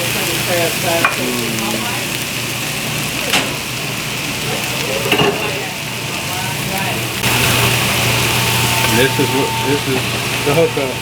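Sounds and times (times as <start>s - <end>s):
food sizzling as it fries: 0.0s - 11.0s
cooking utensils clicking: 4.8s - 5.6s.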